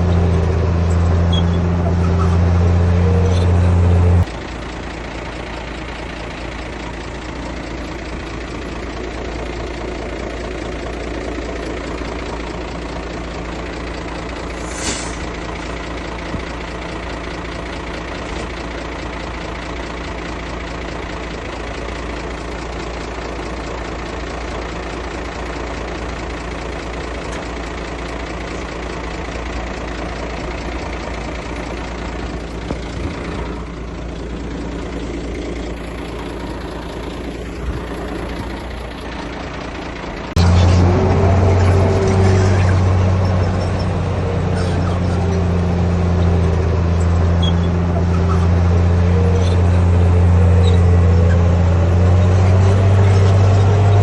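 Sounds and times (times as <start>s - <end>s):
heavy diesel engine running: 0.0s - 54.0s
brief high hiss: 14.6s - 15.2s.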